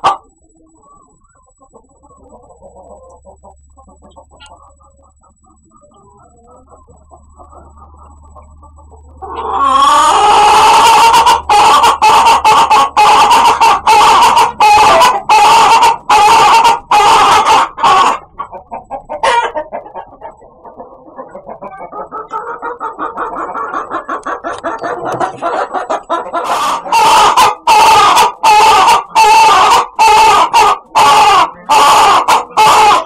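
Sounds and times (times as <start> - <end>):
chicken clucking: 0.0 - 33.0
chicken calling loudly: 6.3 - 33.0.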